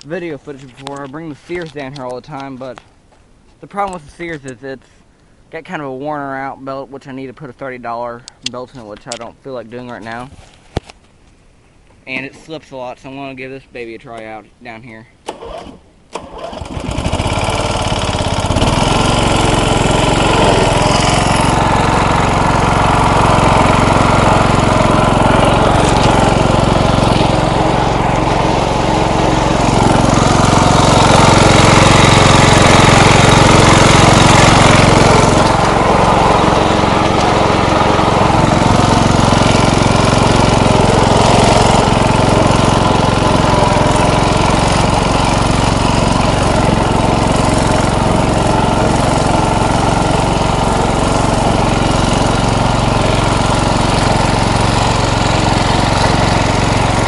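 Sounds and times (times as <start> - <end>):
riding lawn mower engine running: 0.0 - 2.8, 15.3 - 57.0.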